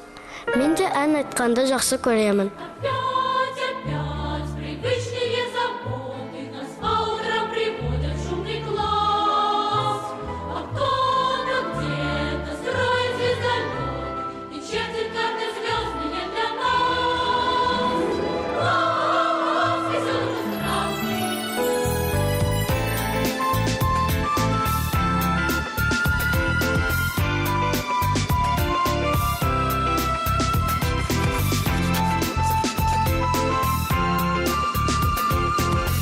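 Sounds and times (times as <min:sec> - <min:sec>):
voices singing a song: 0:02.4 - 0:21.9.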